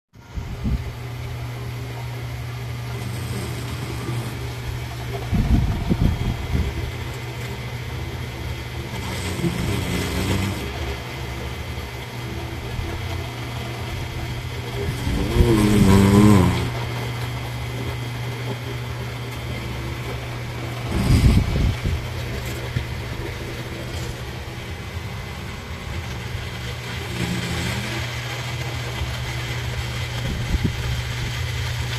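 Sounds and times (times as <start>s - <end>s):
steady low hum: 0.2s - 31.9s
man snoring: 2.8s - 4.8s, 8.8s - 11.0s, 14.8s - 17.0s, 20.8s - 22.6s, 27.0s - 28.2s.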